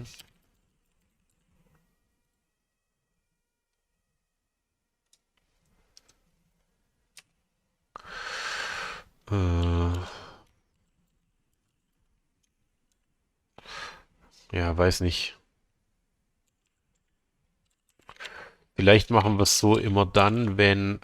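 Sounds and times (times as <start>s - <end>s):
person breathing in: 8.0s - 9.2s, 13.6s - 14.1s, 18.1s - 18.7s
man sighing: 8.0s - 10.5s.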